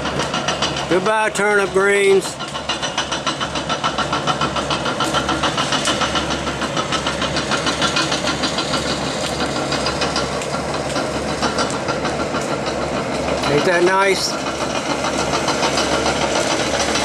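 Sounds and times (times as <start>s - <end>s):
bulldozer diesel engine clattering: 0.0s - 17.0s.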